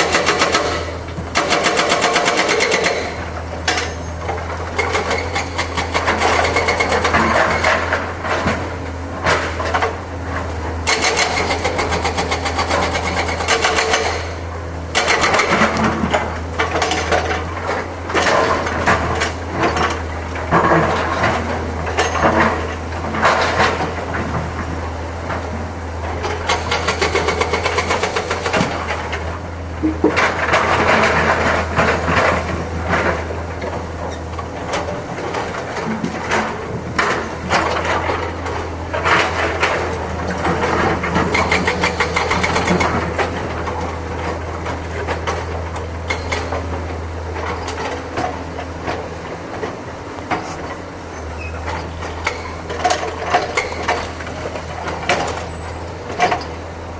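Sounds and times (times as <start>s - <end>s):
excavator diesel engine hum: 0.0s - 56.9s
clanks and knocks: 26.1s - 49.0s.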